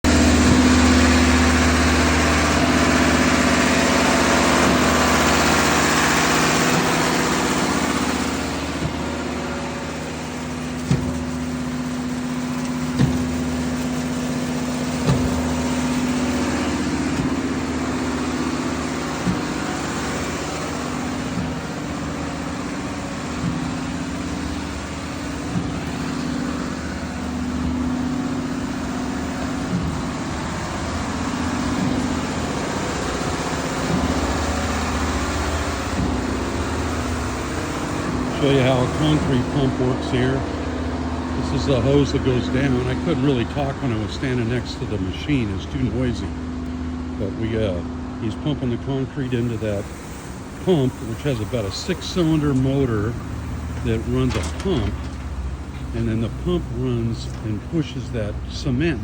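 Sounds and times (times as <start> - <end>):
pump knocking: 0.0 - 44.9
diesel engine running: 0.0 - 59.0.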